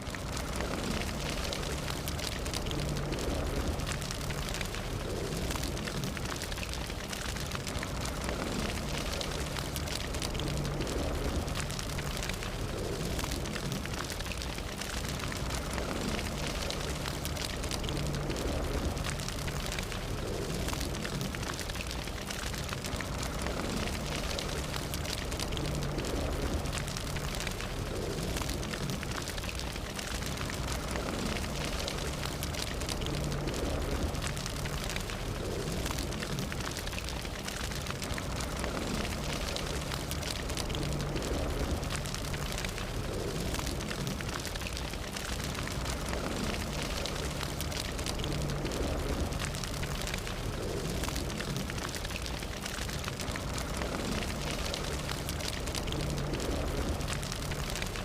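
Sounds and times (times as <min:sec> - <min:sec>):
fire crackling and popping: 0:00.0 - 0:58.0.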